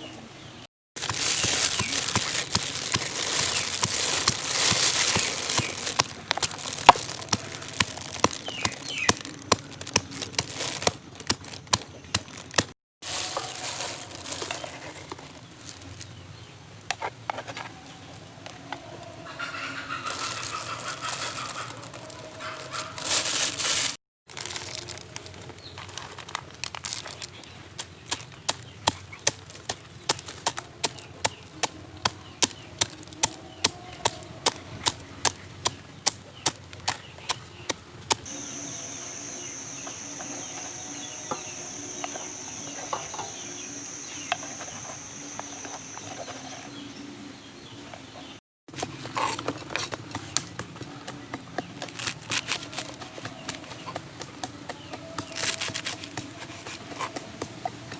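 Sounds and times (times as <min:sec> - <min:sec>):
faint high whine: 0:38.3 - 0:46.8.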